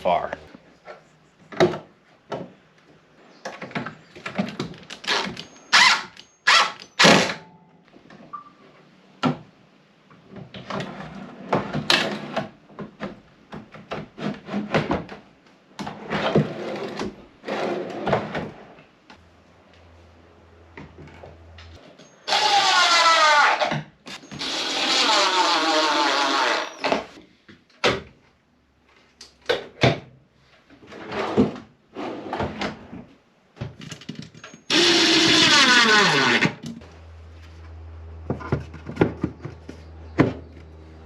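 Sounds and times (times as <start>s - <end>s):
wood scraping: 19.7s - 27.2s, 34.7s - 41.0s
wooden knocks and thunks: 38.2s - 40.7s.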